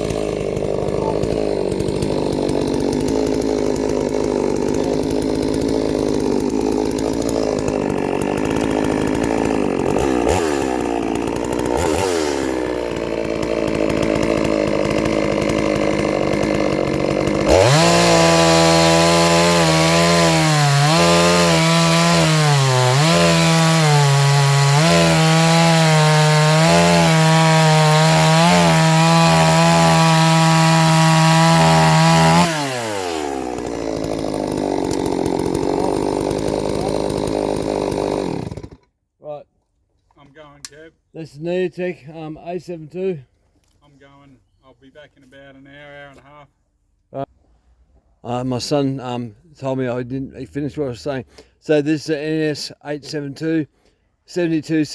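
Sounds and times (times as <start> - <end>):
chainsaw cutting wood: 0.0 - 39.0.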